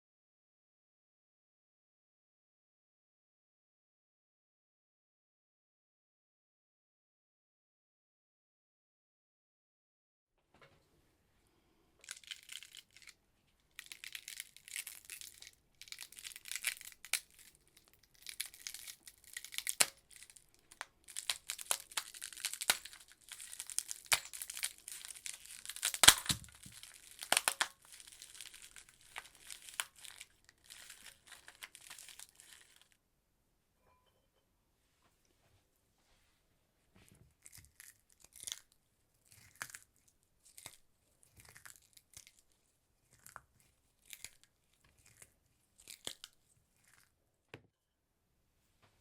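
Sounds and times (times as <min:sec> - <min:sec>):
ice crackling: 0:13.8 - 0:33.0.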